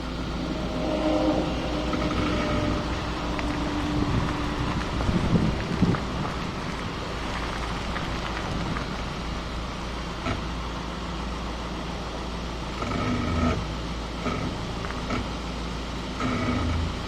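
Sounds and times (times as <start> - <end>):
car road noise: 0.0 - 17.0
brake pads creaking: 12.7 - 17.0.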